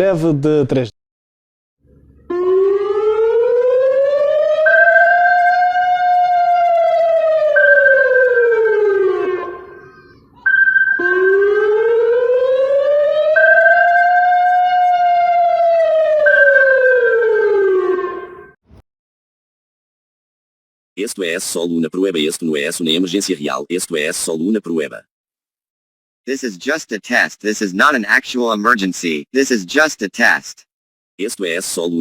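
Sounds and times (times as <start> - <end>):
emergency siren wailing: 1.8 - 18.6
steady high siren tone: 1.9 - 18.6.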